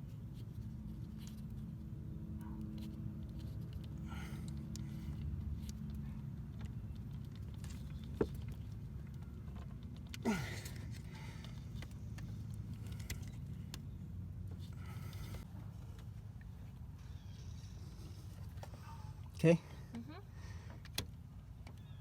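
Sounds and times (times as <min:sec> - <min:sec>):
steady low hum: 0:00.0 - 0:21.5
rubber bushing handling noises: 0:02.8 - 0:16.0.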